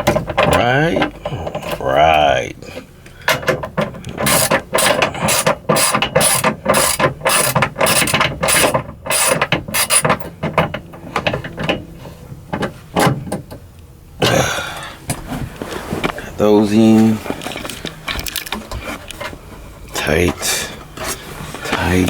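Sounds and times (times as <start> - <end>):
ratchet wrench clicking: 4.2 - 10.1.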